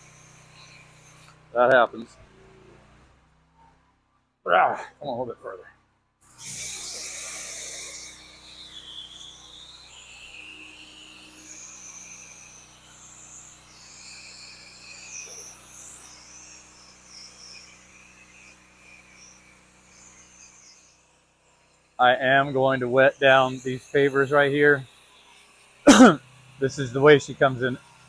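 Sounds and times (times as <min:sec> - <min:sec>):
spray hiss: 0:06.4 - 0:18.3, 0:25.9 - 0:27.8
insects trilling: 0:06.5 - 0:21.0, 0:25.8 - 0:27.8.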